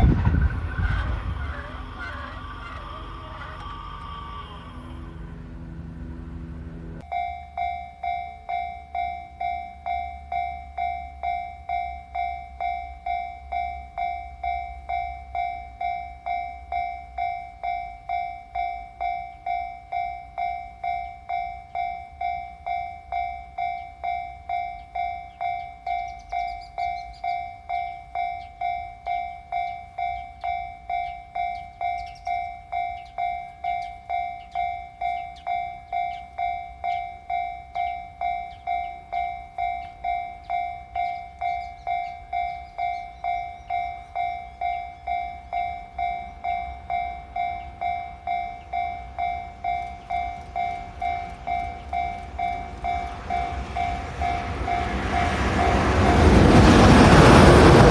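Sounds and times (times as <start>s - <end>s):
low rumble: 0.0s - 7.1s
level-crossing warning bell dinging: 0.0s - 57.9s.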